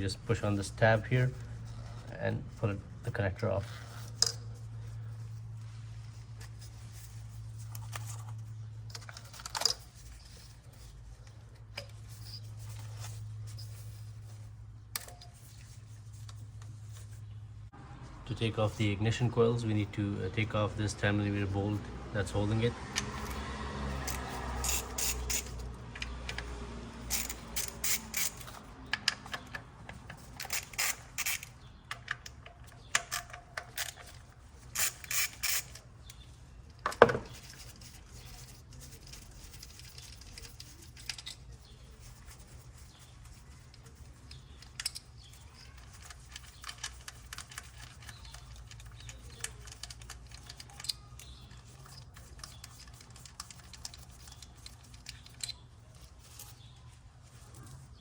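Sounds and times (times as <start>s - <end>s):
ratchet clicking: 22.9s - 36.2s.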